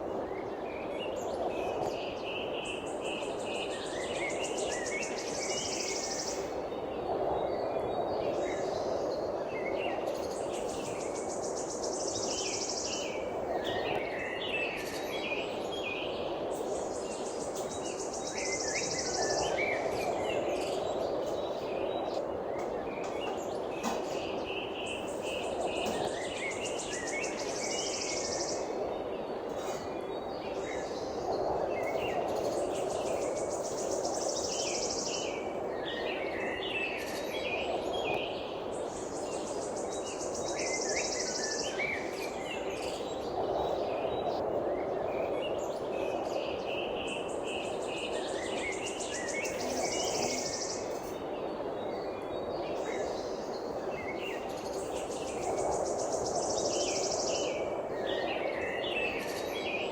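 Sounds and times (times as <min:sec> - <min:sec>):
songbirds chirping: 0:00.0 - 0:59.9.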